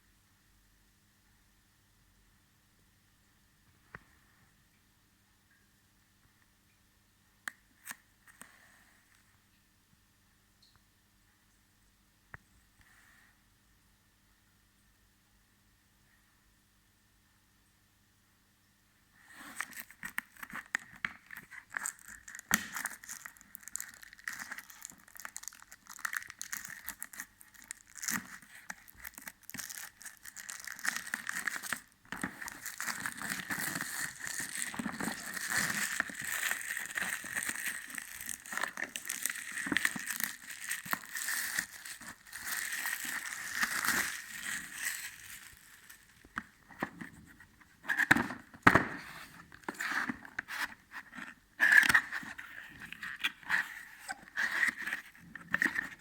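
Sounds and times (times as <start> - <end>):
packaging crinkling and rustling: 19.4 - 56.0.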